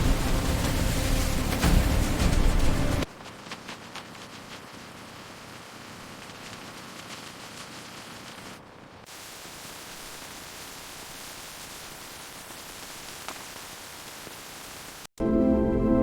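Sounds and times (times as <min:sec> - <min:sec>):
music: 0:00.0 - 0:03.1, 0:15.2 - 0:16.0
steady static hiss: 0:00.0 - 0:15.1.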